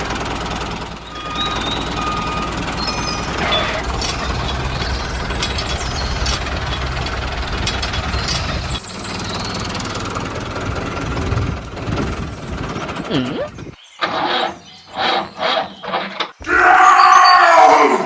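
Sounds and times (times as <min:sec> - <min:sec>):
small engine knocking rumble: 0:00.0 - 0:14.4.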